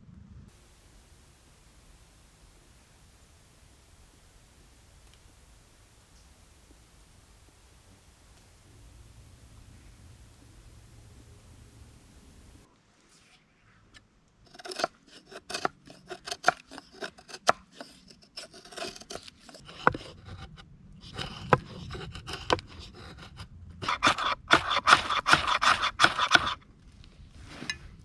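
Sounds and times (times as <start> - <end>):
ferro rod scraping: 14.5 - 26.6.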